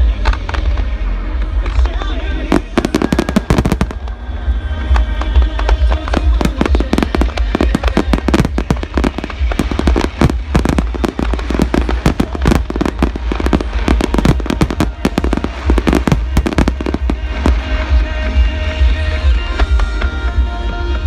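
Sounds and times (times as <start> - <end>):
fireworks bursting: 2.4 - 18.6.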